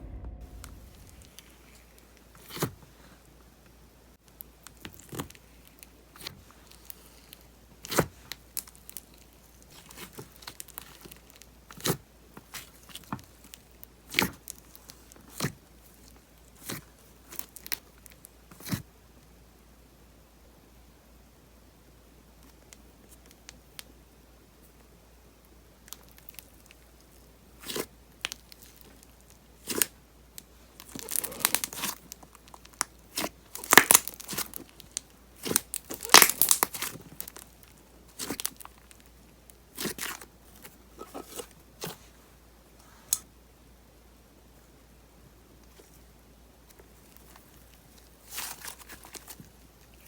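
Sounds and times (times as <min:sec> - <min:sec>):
slime squeezed by hand: 0:30.8 - 0:32.0, 0:35.4 - 0:37.4.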